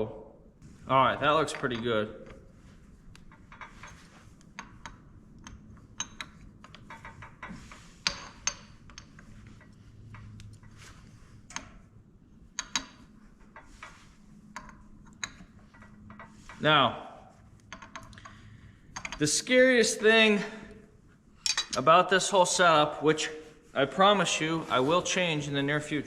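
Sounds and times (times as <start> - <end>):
metal tools clicking and clinking: 3.3 - 10.7, 19.0 - 19.3, 21.4 - 21.8.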